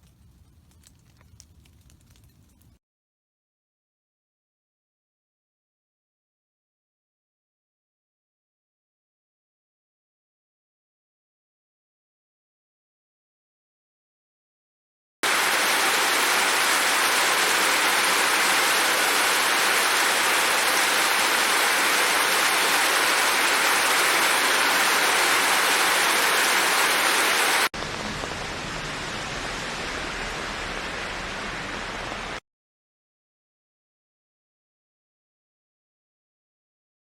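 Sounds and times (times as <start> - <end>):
rain falling: 0.0 - 2.8, 15.2 - 32.4.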